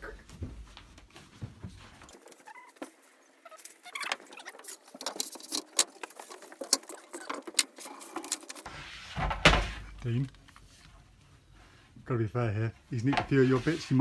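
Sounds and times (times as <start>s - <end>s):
furniture parts clicking and rattling: 3.6s - 8.7s.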